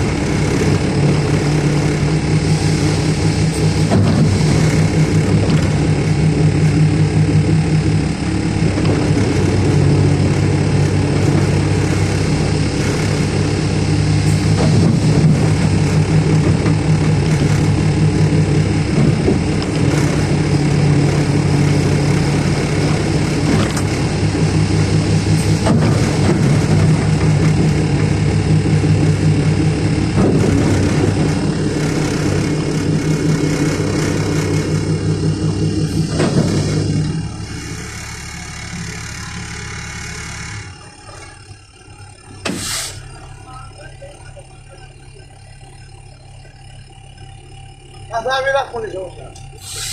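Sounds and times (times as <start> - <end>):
heavy diesel engine running: 0.0 - 49.9
knocks: 30.1 - 31.4.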